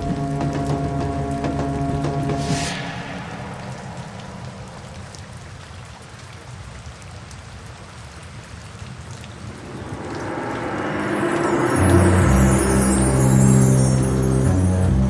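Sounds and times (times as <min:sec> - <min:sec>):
background music: 0:00.0 - 0:04.4, 0:09.7 - 0:15.0
low rumble: 0:00.0 - 0:05.7, 0:09.2 - 0:15.0
steady rain falling: 0:00.0 - 0:15.0.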